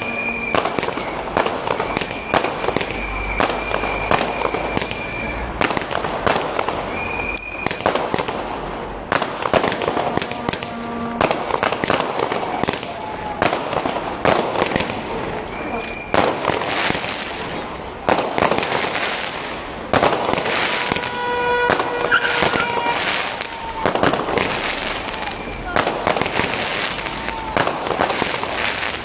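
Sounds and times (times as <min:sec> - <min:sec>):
high whistling tone: 0:00.0 - 0:05.6, 0:06.9 - 0:07.8, 0:15.5 - 0:16.2, 0:21.1 - 0:23.8
fireworks bangs and crackles: 0:00.0 - 0:29.0.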